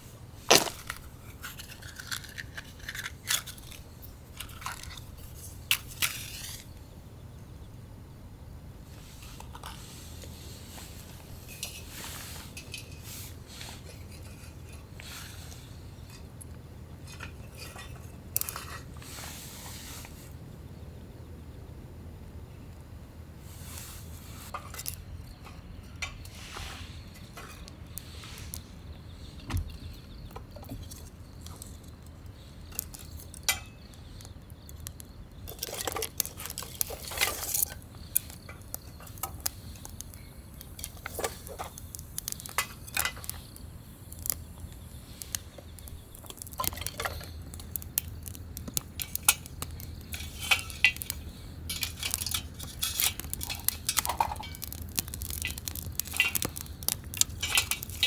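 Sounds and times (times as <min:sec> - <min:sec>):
metal cookware clinking and clattering: 0:33.5 - 0:33.8, 0:49.0 - 0:58.0.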